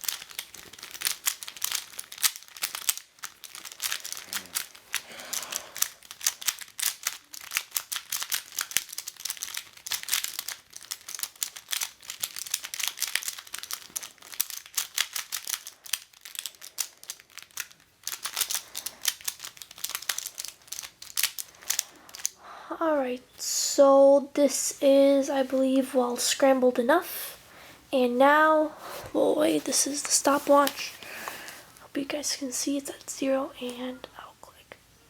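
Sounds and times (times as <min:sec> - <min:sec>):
plastic puzzle pieces clicking: 0:00.0 - 0:22.4.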